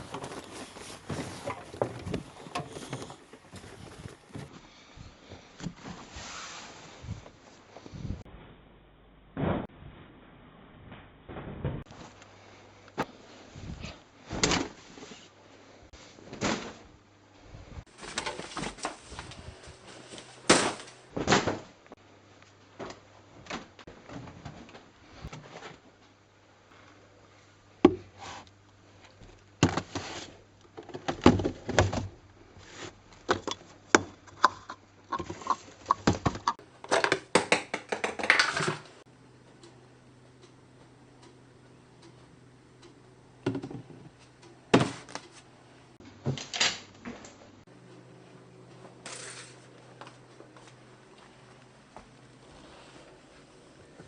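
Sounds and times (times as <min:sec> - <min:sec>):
rustling: 0:00.0 - 0:07.9.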